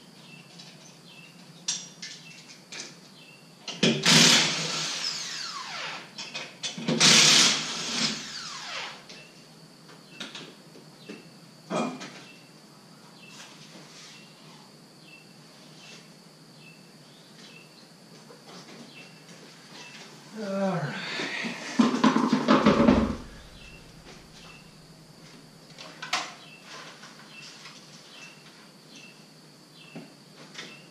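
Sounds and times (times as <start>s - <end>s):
impact wrench whine: 3.8s - 6.2s, 6.9s - 9.3s, 21.2s - 24.9s
knock: 21.7s - 23.3s.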